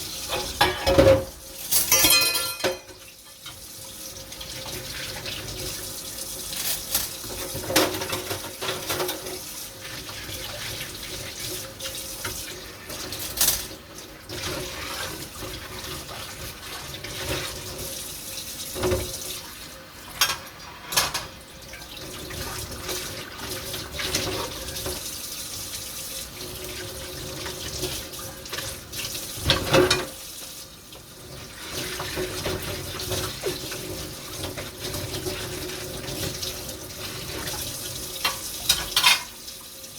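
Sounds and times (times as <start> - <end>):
dishes and pans clattering: 0.3 - 3.6, 6.5 - 9.5, 12.2 - 13.8, 20.1 - 21.4, 29.4 - 30.2, 38.2 - 39.4.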